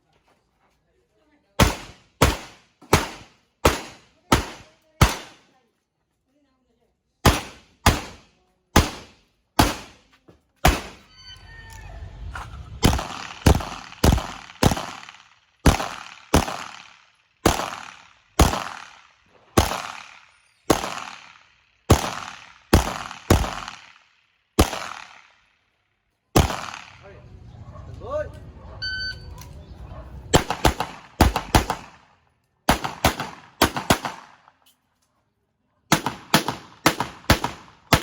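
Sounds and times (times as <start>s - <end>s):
gunshots: 1.6s - 5.5s, 7.2s - 11.1s, 12.8s - 24.0s, 24.6s - 25.4s, 26.4s - 27.2s, 30.3s - 32.1s, 32.7s - 34.5s, 35.9s - 38.0s.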